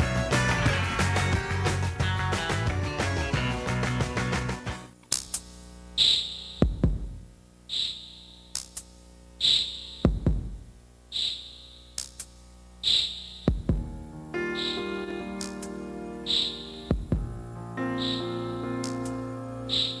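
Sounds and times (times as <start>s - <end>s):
electronic drum machine beat: 6.6s - 7.4s, 10.0s - 10.8s, 13.5s - 20.0s
faint synth tones: 12.8s - 20.0s.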